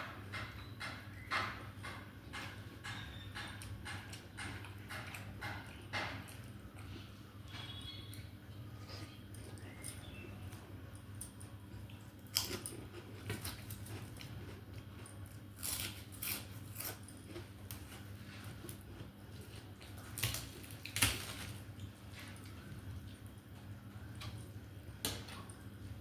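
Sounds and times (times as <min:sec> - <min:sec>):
person chewing food: 0:03.6 - 0:21.0
food crunching: 0:04.1 - 0:24.4.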